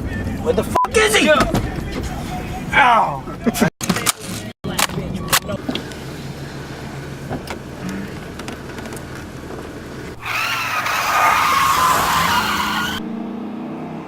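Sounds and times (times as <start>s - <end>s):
tyres squealing: 10.2s - 13.0s.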